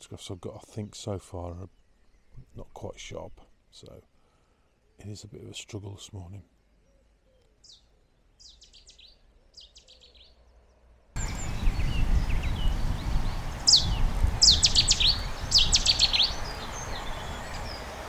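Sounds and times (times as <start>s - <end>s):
rain and wind on microphone: 11.2s - 18.0s
songbird singing rapid high notes: 11.2s - 18.0s.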